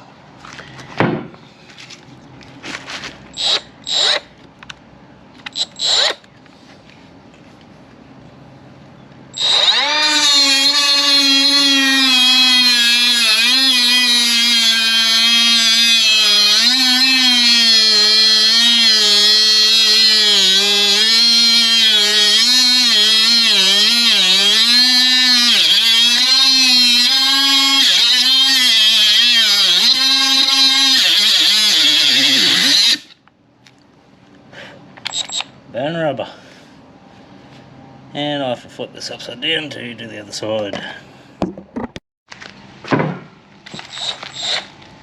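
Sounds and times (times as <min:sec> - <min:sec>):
cut-off tool whining while cutting: 0:03.4 - 0:04.3, 0:09.4 - 0:33.2, 0:43.7 - 0:44.8.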